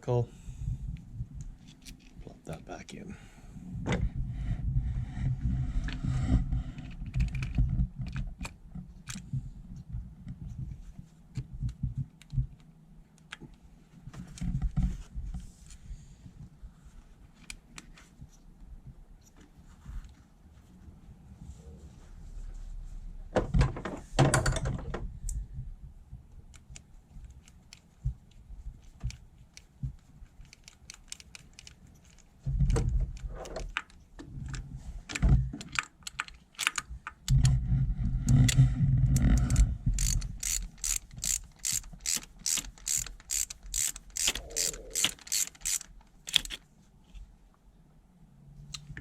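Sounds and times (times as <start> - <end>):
hand ratchet clicking: 39.2 - 46.6.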